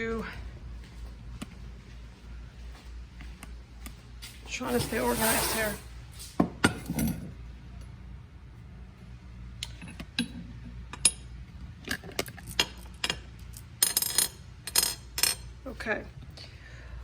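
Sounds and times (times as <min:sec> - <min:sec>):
small metal parts clinking: 0:11.9 - 0:15.5.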